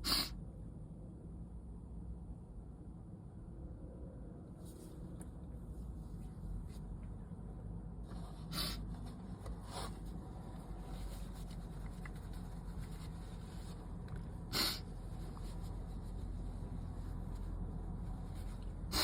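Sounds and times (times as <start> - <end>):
sharp sniffs through stuffy nose: 0.0 - 0.4, 8.1 - 9.0, 9.6 - 10.2, 14.4 - 15.6
steady low hum: 0.0 - 19.0.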